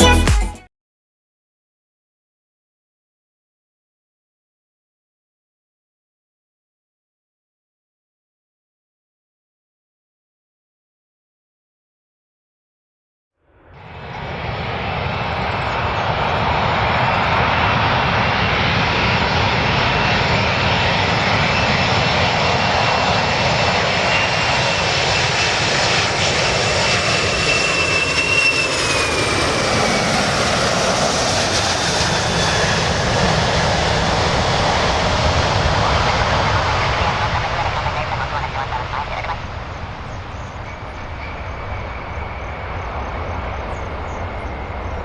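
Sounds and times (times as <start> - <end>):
airplane engines running: 13.6 - 45.0.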